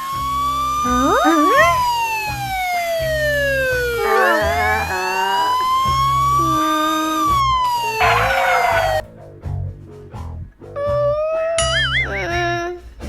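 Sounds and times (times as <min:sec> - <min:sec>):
siren-like gliding tone: 0:03.3 - 0:09.0.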